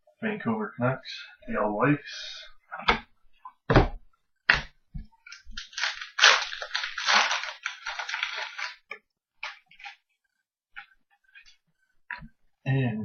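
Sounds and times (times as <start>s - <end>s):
plastic packaging crinkling: 5.3s - 10.0s.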